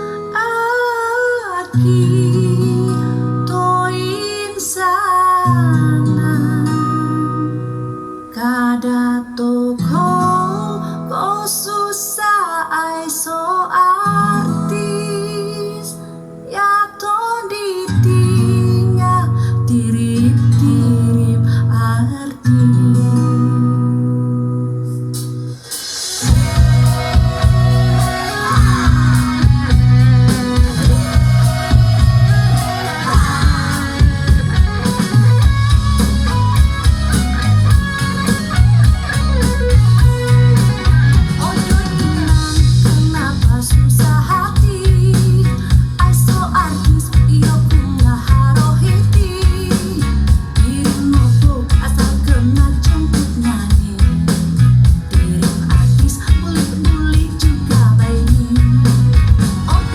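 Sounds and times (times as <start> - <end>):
woman singing over guitar: 0.0 - 25.1, 26.2 - 35.4, 38.6 - 59.9
heavy bass: 25.1 - 59.9.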